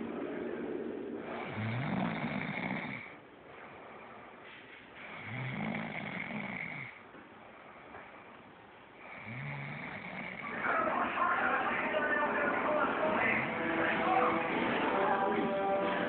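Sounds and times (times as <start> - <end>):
woman snoring: 1.2 - 3.1, 5.1 - 7.0, 9.0 - 10.5.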